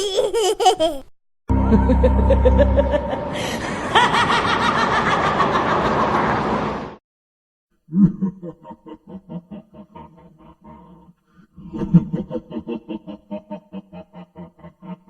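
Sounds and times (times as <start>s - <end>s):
chuckling laughter: 0.0s - 6.6s, 7.9s - 15.0s
laughter in rhythmic bursts: 1.8s - 6.6s, 7.9s - 15.0s.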